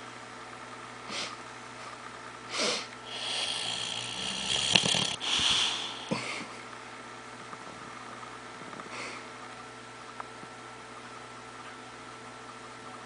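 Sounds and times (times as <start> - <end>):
dog snoring with whistle: 2.6 - 6.2.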